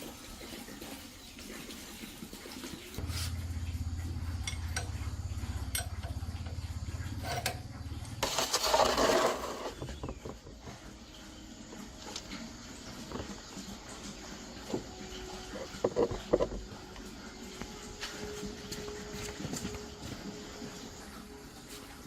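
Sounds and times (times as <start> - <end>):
small motor pulsing hum: 3.0 - 21.6
light metallic clinks: 3.6 - 8.2.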